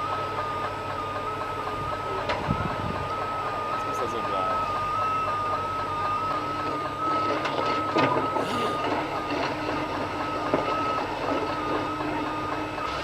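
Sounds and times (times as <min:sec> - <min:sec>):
heavy truck engine whining: 0:00.0 - 0:13.0.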